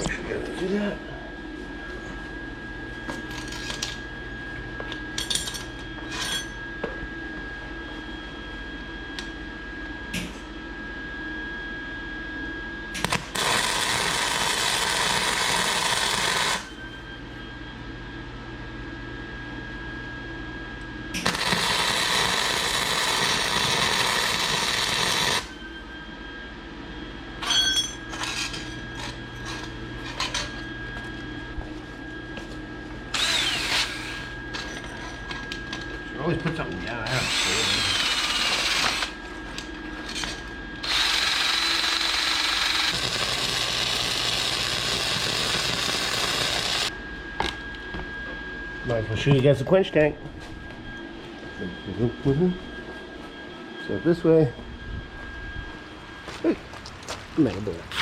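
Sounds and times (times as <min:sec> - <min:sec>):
welder running: 0:03.1 - 0:07.0, 0:12.9 - 0:17.4, 0:20.8 - 0:26.2, 0:27.0 - 0:47.9, 0:55.7 - 0:58.0.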